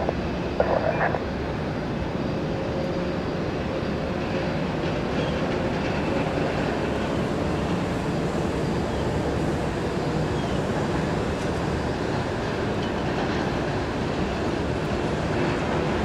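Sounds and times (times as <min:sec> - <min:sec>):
faint whine: 0:00.0 - 0:04.0
aircraft engines rumbling: 0:00.0 - 0:16.0.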